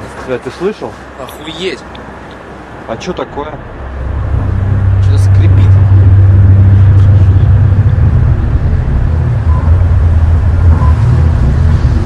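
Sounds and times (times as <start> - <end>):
low creaking drone: 3.2 - 12.0.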